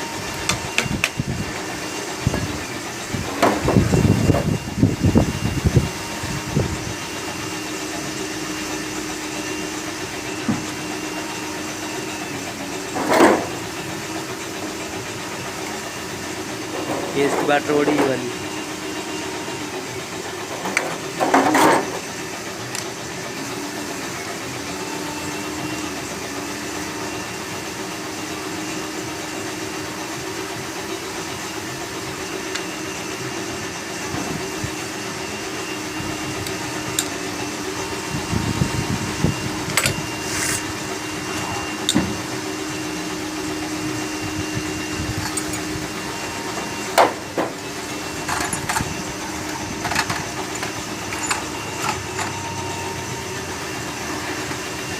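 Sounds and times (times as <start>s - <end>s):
workshop hum: 0.0s - 54.9s
hand tools clinking on engine parts: 45.2s - 45.8s, 48.1s - 52.8s.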